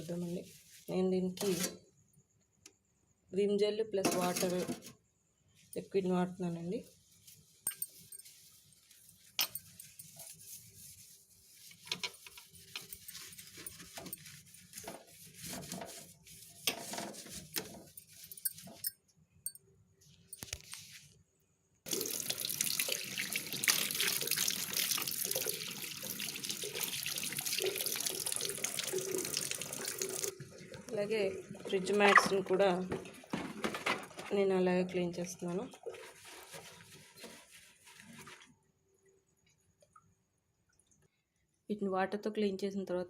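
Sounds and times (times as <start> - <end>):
water running into sink: 21.9 - 33.8.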